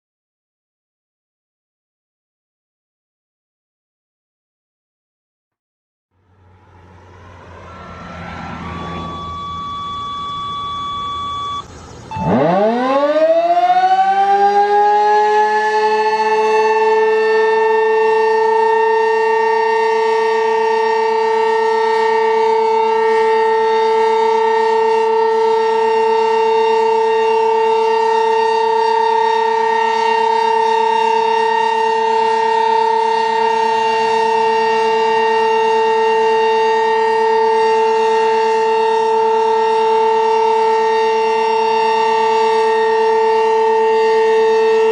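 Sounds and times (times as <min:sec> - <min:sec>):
warning siren winding up: 0:06.3 - 0:44.9
steady high tone: 0:06.4 - 0:12.8.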